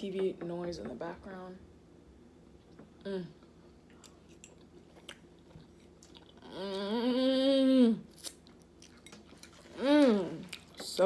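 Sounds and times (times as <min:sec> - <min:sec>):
person humming mmm: 0:03.0 - 0:03.5, 0:06.4 - 0:08.1, 0:09.8 - 0:10.5
person chewing food: 0:03.8 - 0:06.9, 0:08.1 - 0:10.9.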